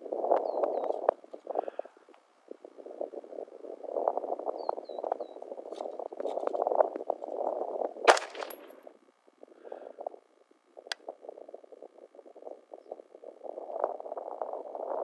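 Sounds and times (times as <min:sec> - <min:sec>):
rifle shot: 0:08.1 - 0:08.8
frogs croaking: 0:08.9 - 0:14.7.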